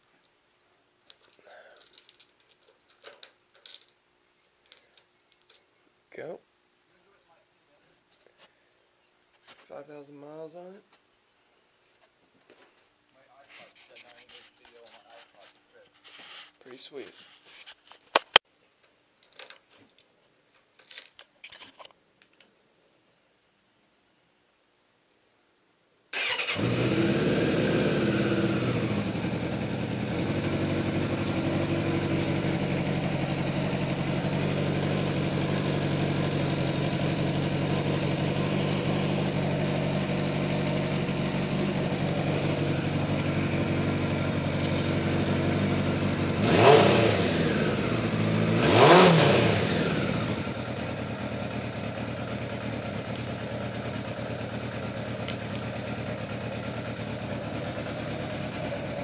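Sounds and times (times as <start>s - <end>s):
motorcycle engine idling: 26.2s - 59.0s
motorcycle throttle blips: 26.2s - 59.0s.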